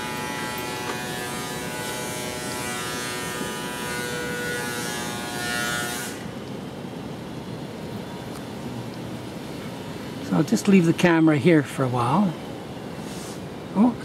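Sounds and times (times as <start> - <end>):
power machine buzzing whine: 0.0 - 6.4.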